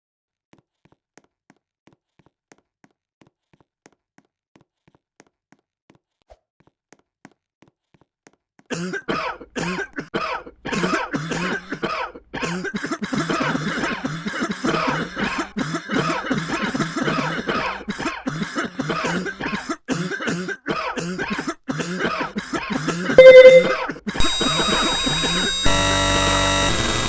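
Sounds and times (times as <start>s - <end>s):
person coughing: 8.7s - 23.8s
loud electronic beep: 23.2s - 27.0s.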